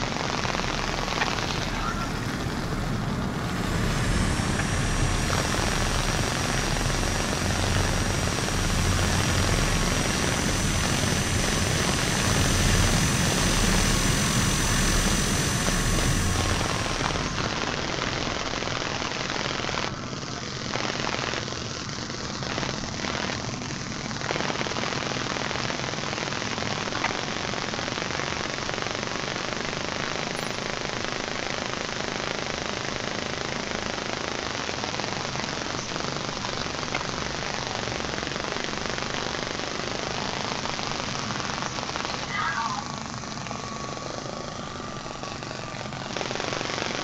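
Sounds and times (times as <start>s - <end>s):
light aircraft engine and propeller: 0.0s - 47.0s.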